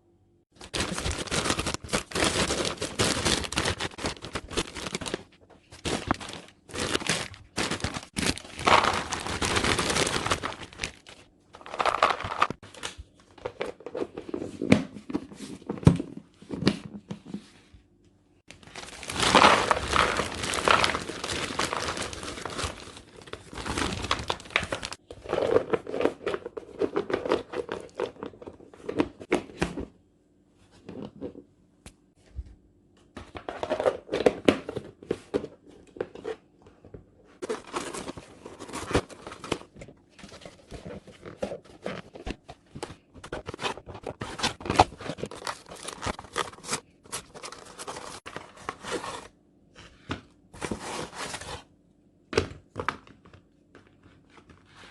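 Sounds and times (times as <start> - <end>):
plastic packaging crinkling and tearing: 0.6 - 13.0, 18.5 - 28.7, 37.4 - 49.3.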